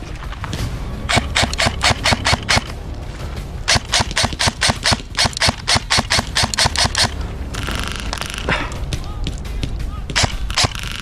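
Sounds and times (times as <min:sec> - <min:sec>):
airsoft rifle rapid shots: 0:01.1 - 0:02.7, 0:03.7 - 0:08.5, 0:10.1 - 0:11.0.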